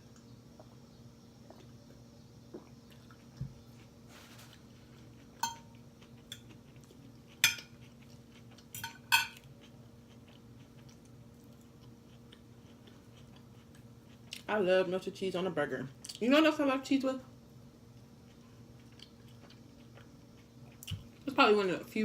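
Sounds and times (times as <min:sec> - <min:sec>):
faint steady hum: 0:00.0 - 0:22.0
utensils clinking on plate: 0:05.4 - 0:05.7, 0:08.8 - 0:09.4.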